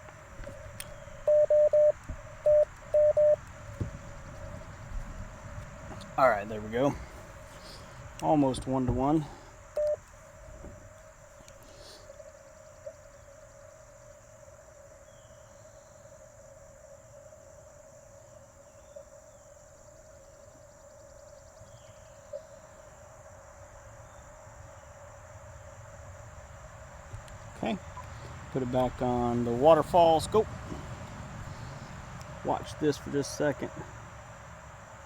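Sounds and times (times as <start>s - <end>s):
radio transceiver steady tone: 0.0s - 4.8s, 5.9s - 14.2s
insects trilling: 0.0s - 35.0s
faint clicks: 11.0s - 11.8s.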